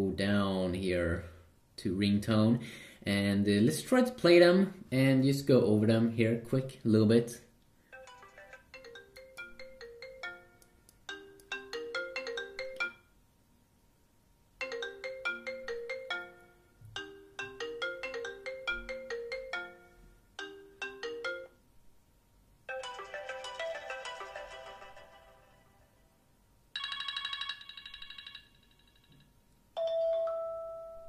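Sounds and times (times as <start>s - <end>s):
phone ringtone melodies: 7.9s - 13.1s, 14.6s - 21.6s, 22.7s - 26.0s, 26.8s - 29.1s, 29.8s - 31.0s.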